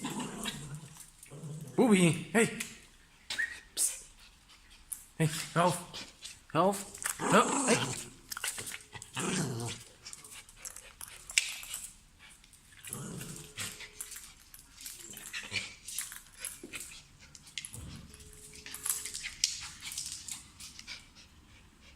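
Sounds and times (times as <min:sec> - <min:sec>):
dog growling: 0:00.0 - 0:01.9, 0:07.1 - 0:09.9, 0:12.8 - 0:13.8.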